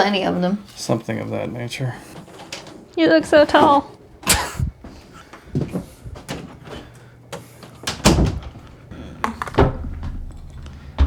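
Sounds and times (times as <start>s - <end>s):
knocks and thumps: 7.9s - 11.0s.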